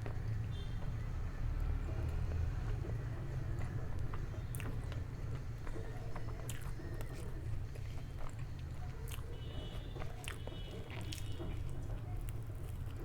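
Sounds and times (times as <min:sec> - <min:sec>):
biting and chewing food: 0:05.7 - 0:09.4, 0:10.0 - 0:13.0.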